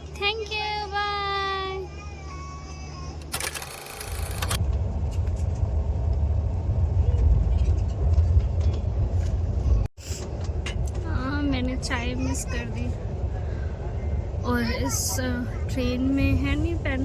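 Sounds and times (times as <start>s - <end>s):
train rumble from inside coach: 4.6s - 17.0s.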